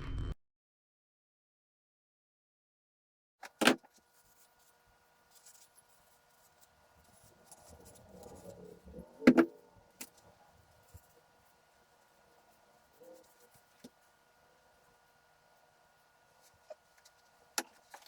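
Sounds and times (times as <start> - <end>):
faint steady hum: 3.5 - 18.0
quiet rattling and shuffling: 3.9 - 18.0.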